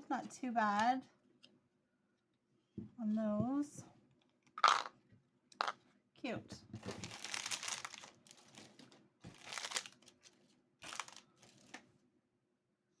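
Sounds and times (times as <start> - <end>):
plastic packaging crinkling: 6.9 - 11.8.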